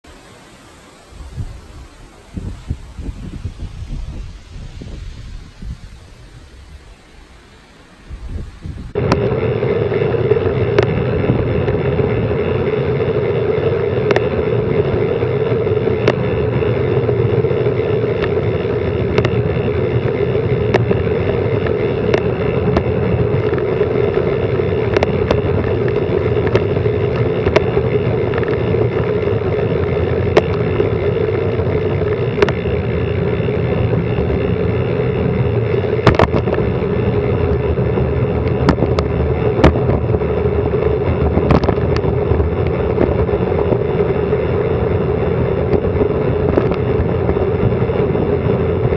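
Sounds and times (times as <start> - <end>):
wind and road noise rushing: 0.0 - 48.9
bike rattling ticks and knocks: 10.4 - 48.9.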